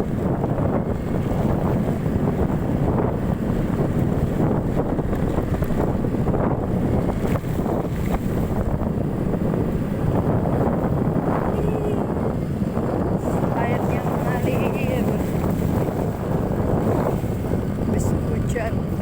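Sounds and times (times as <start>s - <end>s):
motorcycle engine running: 0.0s - 19.0s
tyres on rough road: 0.0s - 19.0s
wind buffeting microphone: 0.0s - 19.0s.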